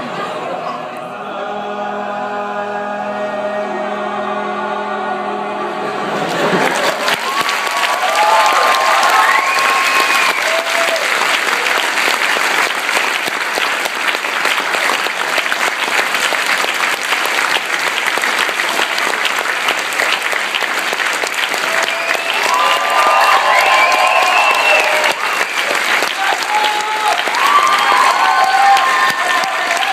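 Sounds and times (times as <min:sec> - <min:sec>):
audience clapping: 0:06.3 - 0:29.9
shouts and whoops: 0:07.2 - 0:11.6, 0:21.6 - 0:25.4, 0:26.1 - 0:29.9.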